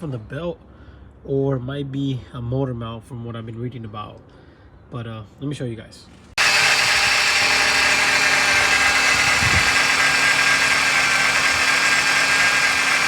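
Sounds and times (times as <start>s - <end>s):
car engine idling: 6.4s - 13.0s
whining noise: 6.4s - 13.0s.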